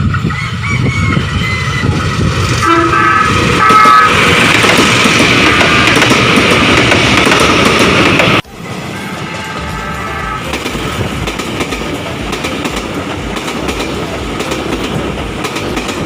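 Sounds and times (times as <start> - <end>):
train rushing past: 0.0 - 16.0
electric train horn: 2.6 - 4.5, 8.4 - 11.2.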